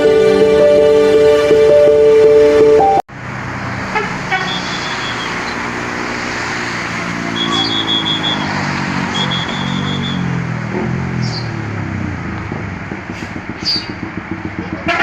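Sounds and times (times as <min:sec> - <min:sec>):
road traffic: 0:00.0 - 0:15.0
short high-pitched tones: 0:00.1 - 0:03.0.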